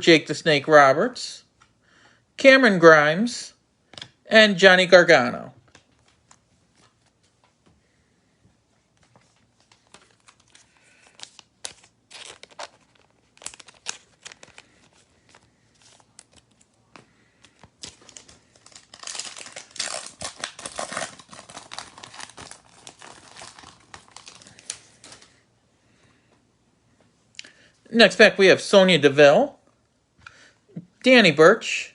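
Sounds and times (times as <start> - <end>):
cards being handled: 8.9 - 25.4
foil wrapper tearing and crinkling: 9.7 - 16.7, 17.5 - 25.3.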